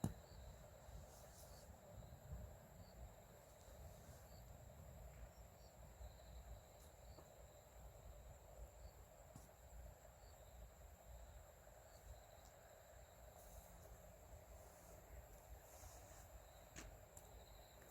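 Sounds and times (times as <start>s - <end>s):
night insects trilling: 0.2s - 14.5s, 16.2s - 17.9s.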